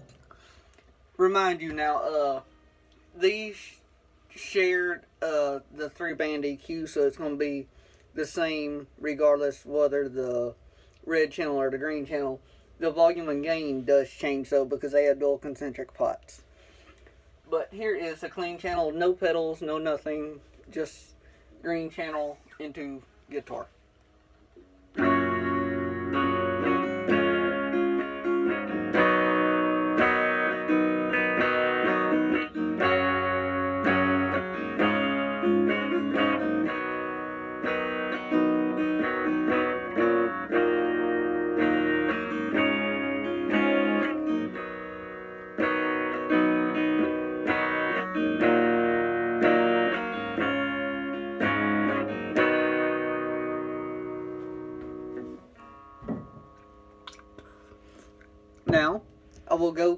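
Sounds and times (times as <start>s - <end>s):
clean electric guitar chords: 24.5s - 59.4s.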